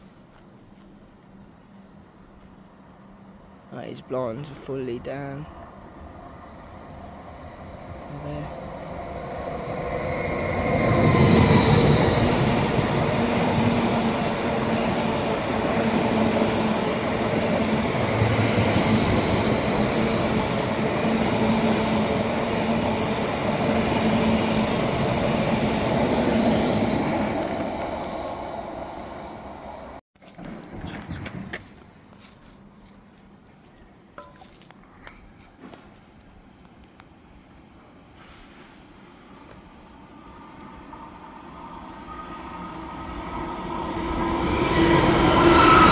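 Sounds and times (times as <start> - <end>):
train wheels rumbling on rails: 5.2 - 31.8, 42.0 - 45.9.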